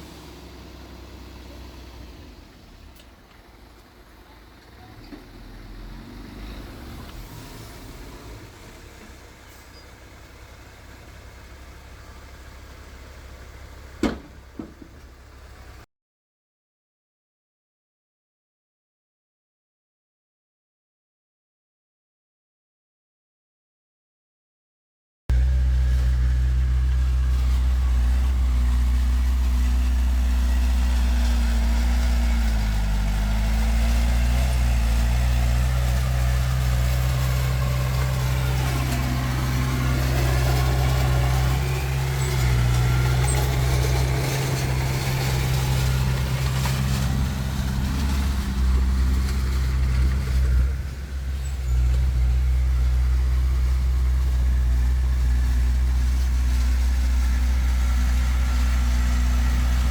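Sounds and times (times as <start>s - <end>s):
heavy diesel machinery engine drone: 25.3s - 59.9s.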